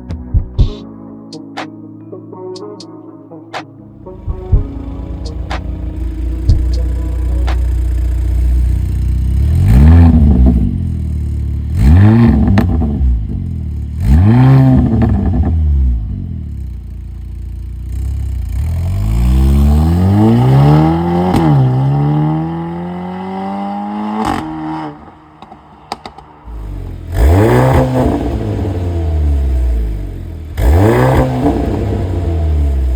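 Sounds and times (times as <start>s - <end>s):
car engine revving: 4.0s - 32.9s
exhaust crack at gear change: 4.3s - 19.3s.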